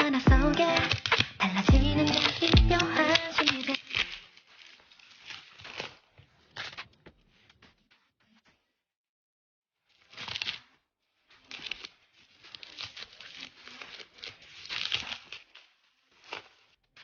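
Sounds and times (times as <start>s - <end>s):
packaging crinkling and tearing: 0.6s - 7.0s, 9.9s - 17.0s.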